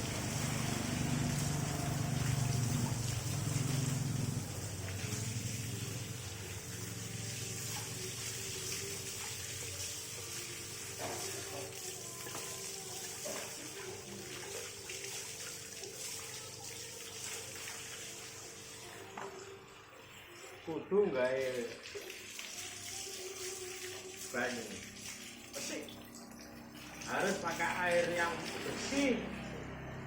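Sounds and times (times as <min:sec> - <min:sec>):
tap water running: 0:00.0 - 0:29.8.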